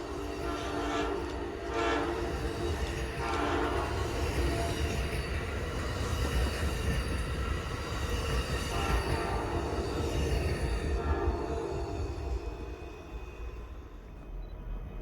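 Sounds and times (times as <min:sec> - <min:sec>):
train horn blasts: 0:00.0 - 0:05.2, 0:08.6 - 0:12.8
train rumbling past: 0:00.0 - 0:15.0.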